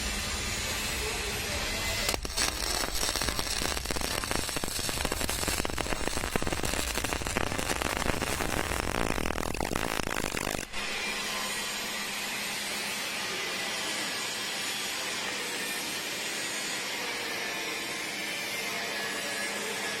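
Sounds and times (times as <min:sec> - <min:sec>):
welding arc hissing: 0:00.0 - 0:12.2.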